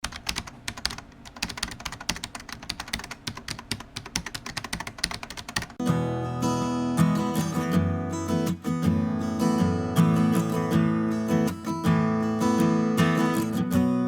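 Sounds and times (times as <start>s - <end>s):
keyboard typing: 0.0s - 5.8s
strummed acoustic guitar music: 5.8s - 14.0s.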